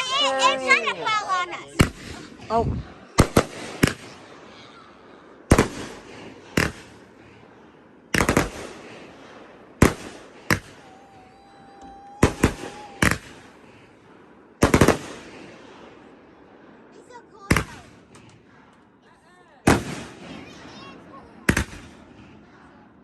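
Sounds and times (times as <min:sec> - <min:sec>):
fireworks exploding: 0:00.0 - 0:23.0
crackling pops: 0:03.2 - 0:04.2, 0:06.6 - 0:07.0, 0:08.1 - 0:08.8, 0:09.8 - 0:10.8.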